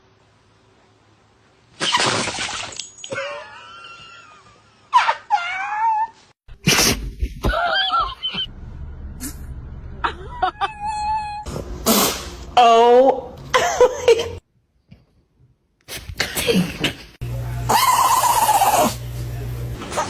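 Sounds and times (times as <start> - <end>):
dog sneezing: 11.8 - 12.4.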